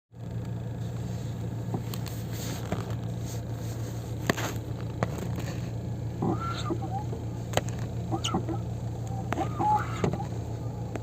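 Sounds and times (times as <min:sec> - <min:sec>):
car engine humming: 0:00.2 - 0:11.0
squeaky clutch creaks: 0:04.2 - 0:11.0.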